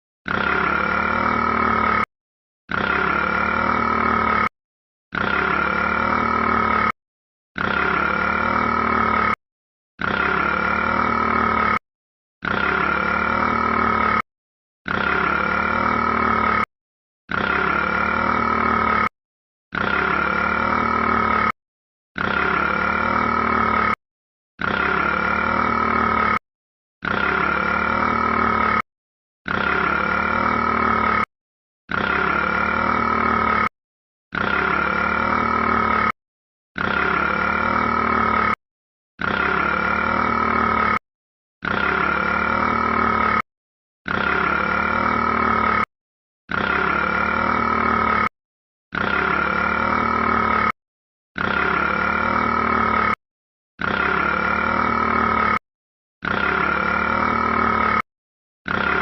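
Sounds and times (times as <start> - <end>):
long burp: 0.3 - 2.1, 2.7 - 4.5, 5.1 - 7.0, 7.6 - 9.4, 10.0 - 11.8, 12.4 - 14.2, 14.9 - 16.7, 17.3 - 21.6, 22.2 - 24.0, 24.6 - 26.4, 27.0 - 28.9, 31.9 - 33.7, 34.3 - 36.2, 36.8 - 38.6, 39.2 - 41.0, 41.6 - 43.5, 46.5 - 48.3, 48.9 - 50.8, 51.4 - 53.2, 53.8 - 55.6, 56.2 - 58.1.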